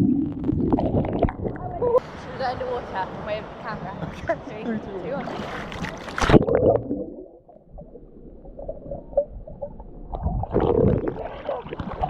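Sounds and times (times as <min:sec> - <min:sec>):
muffled underwater rumble: 0:00.0 - 0:04.2, 0:05.7 - 0:12.0
rush of churning water: 0:04.4 - 0:06.4.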